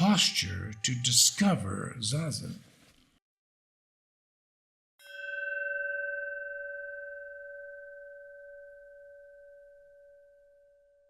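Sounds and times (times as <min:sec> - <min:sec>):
meditation bell ringing: 0:05.0 - 0:11.0.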